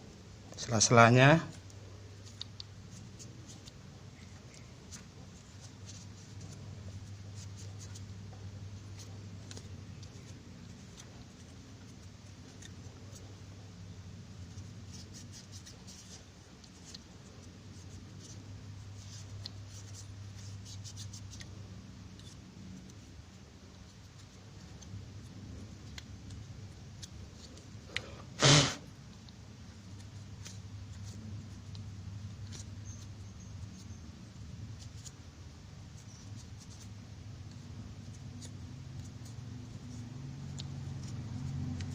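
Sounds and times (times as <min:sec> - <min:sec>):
scratching and rubbing on fan: 0:00.0 - 0:41.9
steady low hum: 0:00.0 - 0:41.9
short loud burst: 0:28.4 - 0:28.8.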